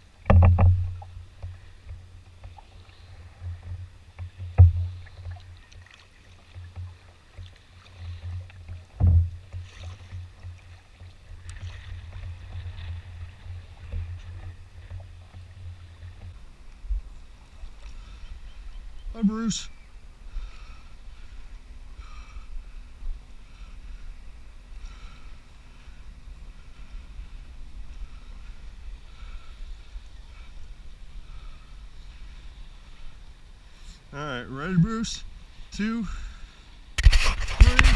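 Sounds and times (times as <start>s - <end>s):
paddle knocking canoe hull: 0.2s - 16.6s
wind on microphone: 36.9s - 37.9s.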